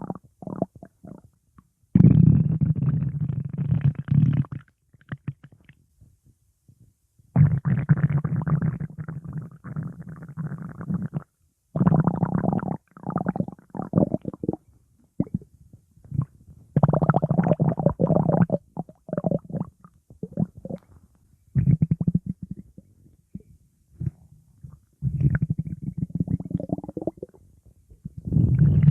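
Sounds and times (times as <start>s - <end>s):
stomach growling: 0.0s - 1.4s, 2.0s - 5.8s, 7.4s - 14.6s, 15.2s - 21.0s, 21.6s - 27.4s, 28.0s - 28.9s.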